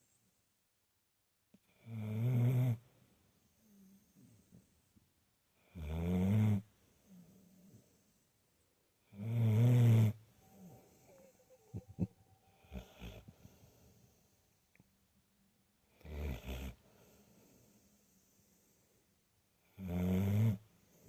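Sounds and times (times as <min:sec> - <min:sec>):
dog snoring loudly: 0:05.6 - 0:06.6, 0:09.1 - 0:10.7, 0:16.0 - 0:16.8, 0:19.7 - 0:20.6.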